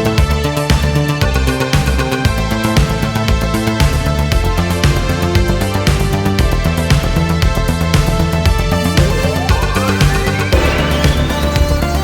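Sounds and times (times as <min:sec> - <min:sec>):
pulsing synth bass line: 0:00.0 - 0:12.0
electronic drum beat: 0:02.4 - 0:12.0
synthesizer chords: 0:08.1 - 0:12.0.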